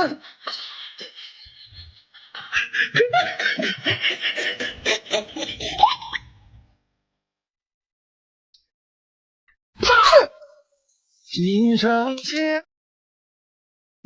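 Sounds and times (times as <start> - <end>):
person laughing: 0.0 - 6.3.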